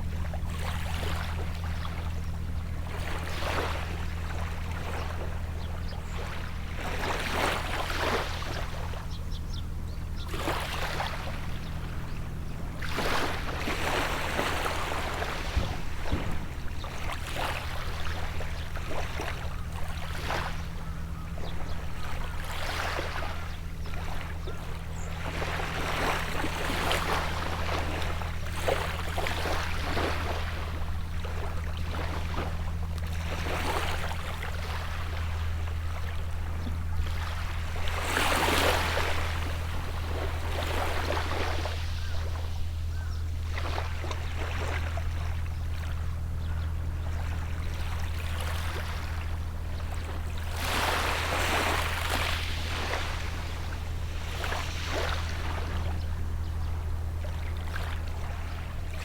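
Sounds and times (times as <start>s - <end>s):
distant boat engine drone: 0.0s - 59.0s
sea waves washing onto shore: 12.8s - 19.4s, 50.0s - 59.0s.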